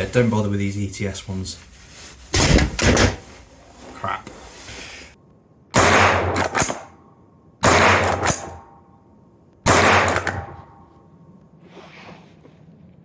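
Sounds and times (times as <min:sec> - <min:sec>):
rifle shots: 0:05.7 - 0:07.0, 0:07.6 - 0:08.7, 0:09.6 - 0:10.8.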